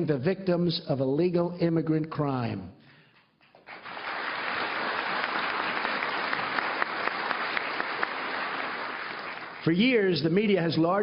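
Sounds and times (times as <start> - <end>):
audience applauding: 3.5 - 10.0.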